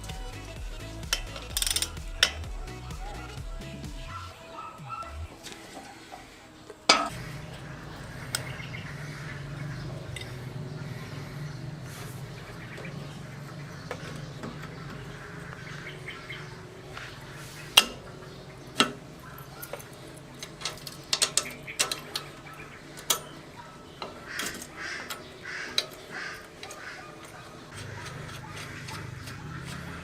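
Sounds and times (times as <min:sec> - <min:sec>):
metallic clicks of tools: 0:01.0 - 0:02.5, 0:19.6 - 0:22.4
steady low hum: 0:06.9 - 0:30.0.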